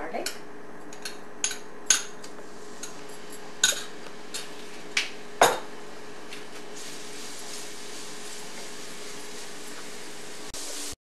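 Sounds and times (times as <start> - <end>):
oil sizzling: 2.4 - 11.0.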